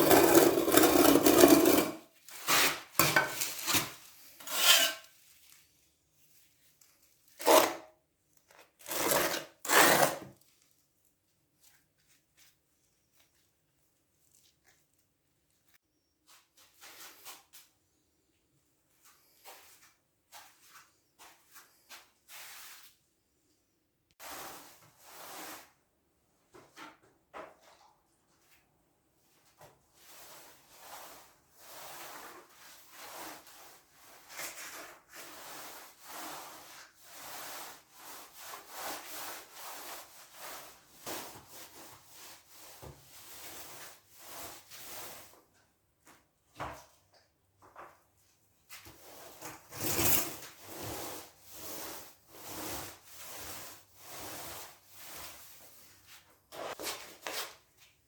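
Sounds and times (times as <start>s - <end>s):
hand tool scraping a surface: 0.0s - 5.2s, 7.4s - 7.8s, 8.8s - 10.4s, 48.9s - 57.6s.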